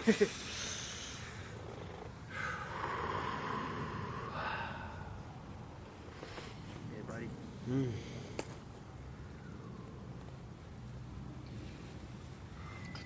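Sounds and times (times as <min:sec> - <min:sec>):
person exhaling heavily: 0:00.4 - 0:01.5, 0:02.3 - 0:05.2.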